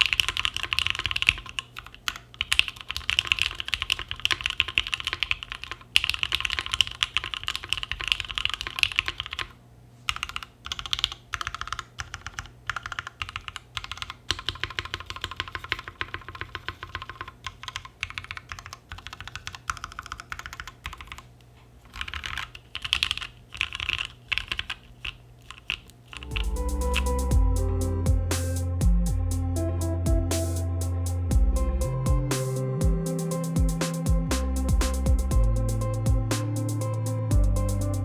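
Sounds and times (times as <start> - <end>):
typing on mechanical keyboard: 0.0 - 21.3, 21.9 - 26.5.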